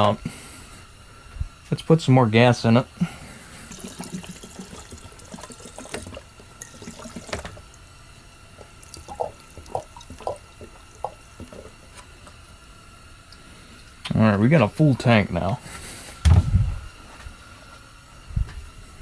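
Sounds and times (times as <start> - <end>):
liquid trickling into tank: 2.9 - 15.2.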